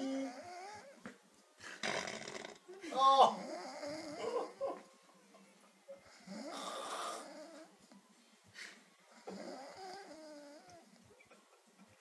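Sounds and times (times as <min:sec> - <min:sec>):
man snoring: 0:01.8 - 0:02.6, 0:03.3 - 0:04.4, 0:06.2 - 0:07.7, 0:09.2 - 0:10.8.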